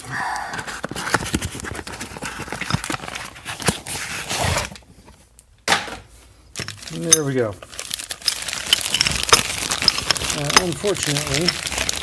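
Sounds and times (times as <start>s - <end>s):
rustling of unpacking: 0.4s - 5.3s, 6.6s - 12.0s
clicks and knocks of handling: 6.6s - 12.0s.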